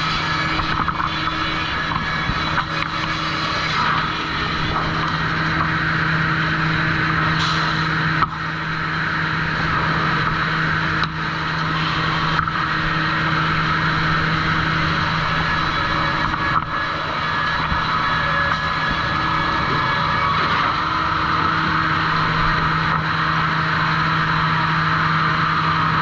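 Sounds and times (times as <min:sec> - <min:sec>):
motor hum: 0:00.0 - 0:26.0
mechanical hiss: 0:07.4 - 0:08.0.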